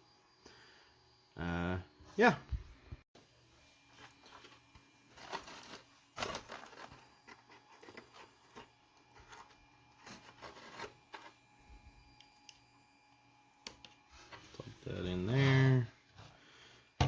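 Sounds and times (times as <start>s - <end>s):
small objects rustling and scraping: 3.8s - 11.5s.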